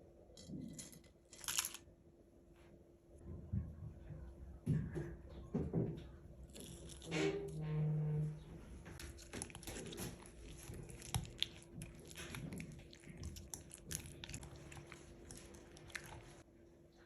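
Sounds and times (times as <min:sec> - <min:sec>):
hands handling food clicks and rustles: 0:00.4 - 0:01.9, 0:09.0 - 0:16.4.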